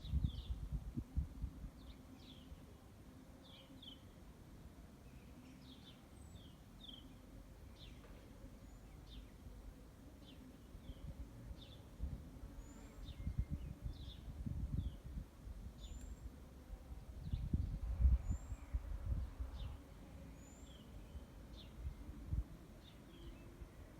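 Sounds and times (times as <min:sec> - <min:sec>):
small birds chirping: 0:15.8 - 0:16.4, 0:17.2 - 0:23.9.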